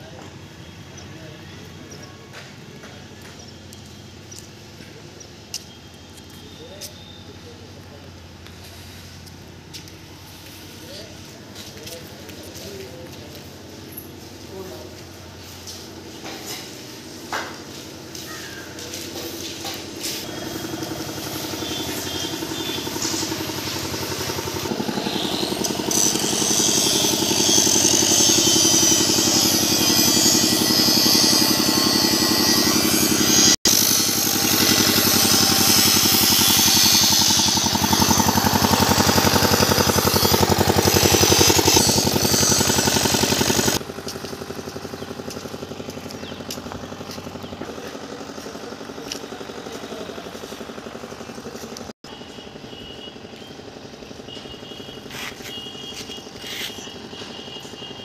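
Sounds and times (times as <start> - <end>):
engine running with fast pulse: 19.6 - 58.0.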